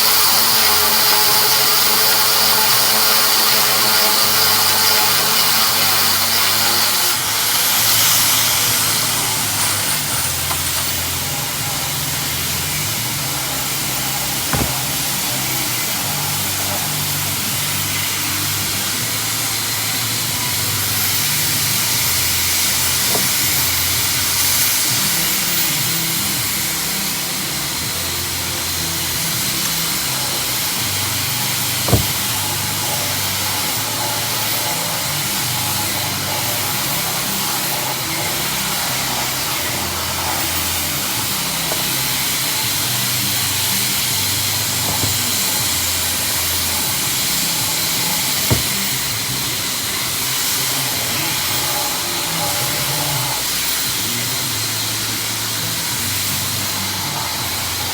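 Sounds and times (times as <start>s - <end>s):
power tool humming and hissing: 0.0s - 57.9s
short sharp knocks: 14.5s - 15.0s, 31.9s - 32.4s, 44.8s - 45.4s, 48.4s - 48.8s.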